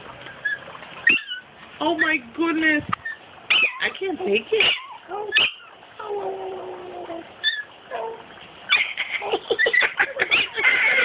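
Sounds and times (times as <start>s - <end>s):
puppy whining and squeaking: 0.3s - 2.2s, 2.9s - 4.0s, 4.6s - 11.0s
puppy yipping: 0.3s - 2.2s, 3.0s - 4.0s, 4.6s - 6.3s, 7.4s - 11.0s.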